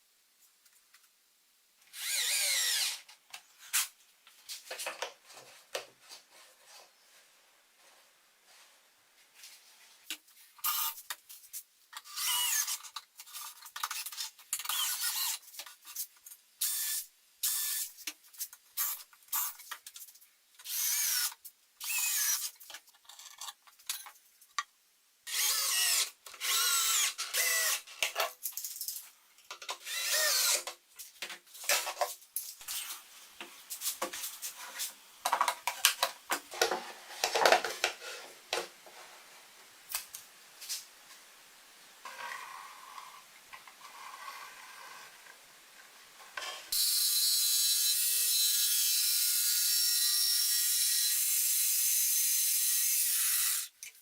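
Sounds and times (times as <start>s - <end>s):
power drill whine: 1.9s - 3.0s, 25.3s - 27.8s, 29.9s - 30.6s.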